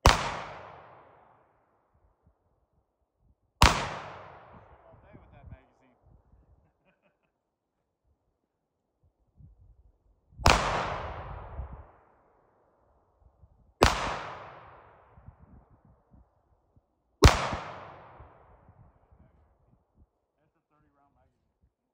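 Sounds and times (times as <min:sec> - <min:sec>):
pistol shots with echo: 0:00.0 - 0:01.5, 0:03.6 - 0:05.0, 0:10.4 - 0:12.1, 0:13.8 - 0:15.2, 0:17.2 - 0:18.7.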